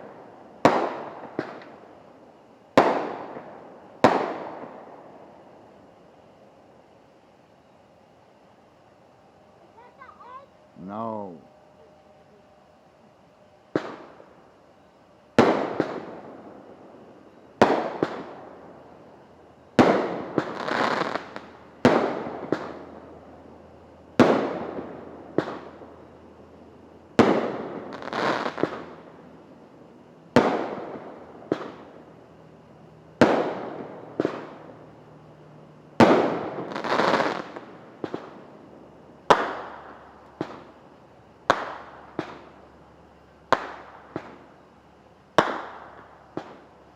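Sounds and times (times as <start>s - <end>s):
fireworks banging: 0.0s - 1.8s, 2.7s - 5.0s, 13.7s - 14.3s, 15.3s - 16.8s, 17.6s - 18.8s, 19.8s - 23.1s, 24.2s - 25.9s, 27.1s - 29.2s, 30.3s - 32.0s, 33.2s - 34.8s, 36.0s - 38.6s, 39.2s - 40.8s, 41.4s - 42.6s, 43.5s - 44.6s, 45.4s - 46.7s.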